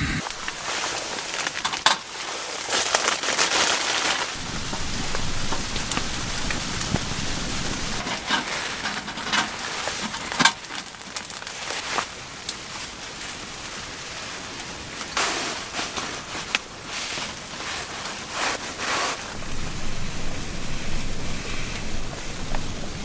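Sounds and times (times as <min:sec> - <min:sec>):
rustling and crunching handling noise: 0:00.2 - 0:23.0.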